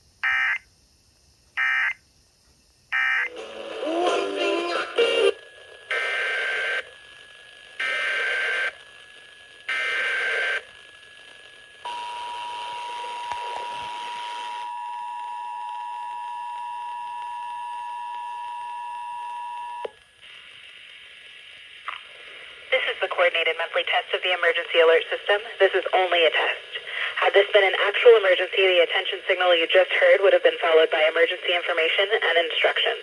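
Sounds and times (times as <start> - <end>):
digital data bursts: 2.9 - 3.4.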